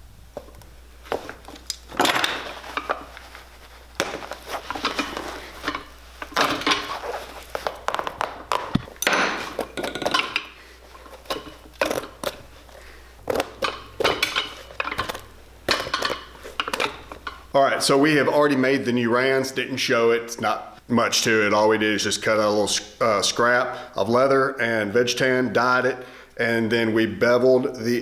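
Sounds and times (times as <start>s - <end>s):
hand tools tapping and scraping leather: 0.3s - 17.5s.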